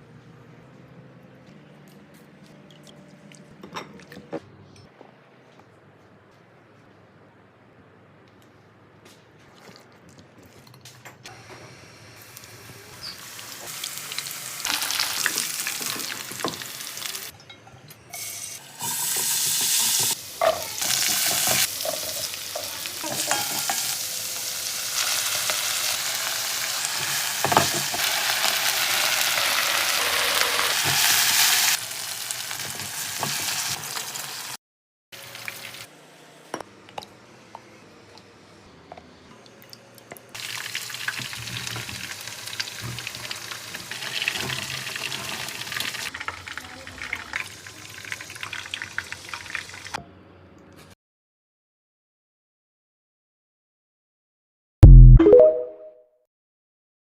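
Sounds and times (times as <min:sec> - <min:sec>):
food sizzling in oil: 0:12.2 - 0:17.3, 0:18.1 - 0:34.6, 0:40.4 - 0:50.0.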